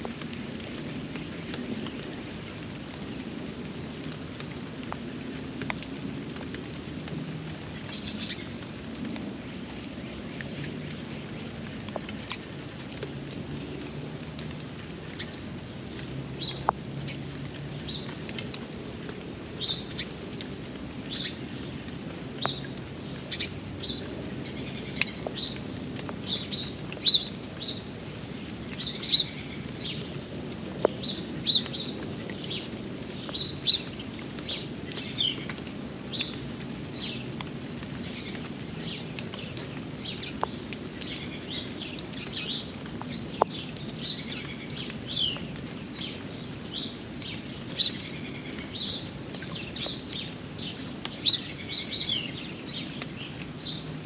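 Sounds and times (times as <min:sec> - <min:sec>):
sharp drips: 0:00.0 - 0:54.0
steady rain falling: 0:00.0 - 0:54.0.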